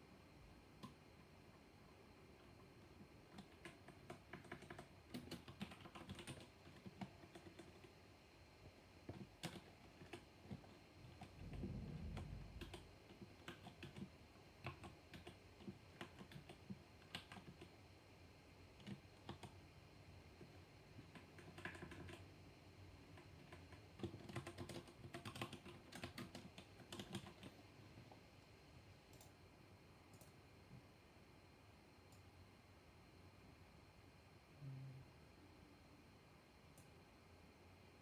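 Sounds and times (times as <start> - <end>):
typing on mechanical keyboard: 2.4 - 8.0, 9.0 - 17.8, 18.8 - 19.6, 20.4 - 22.2, 23.1 - 27.5
low rumble: 11.4 - 12.7.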